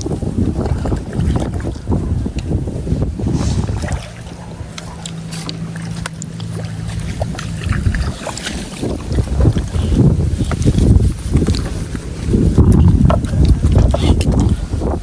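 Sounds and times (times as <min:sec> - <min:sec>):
wind buffeting microphone: 0:00.0 - 0:05.8, 0:08.8 - 0:15.0
steady low hum: 0:03.1 - 0:05.2.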